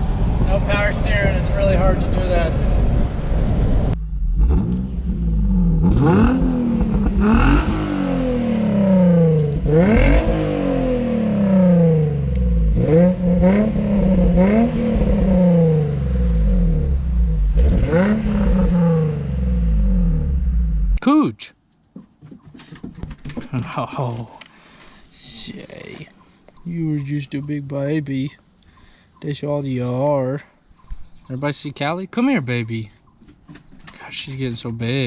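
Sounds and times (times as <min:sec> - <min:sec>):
car engine revving hard: 0:04.2 - 0:21.0.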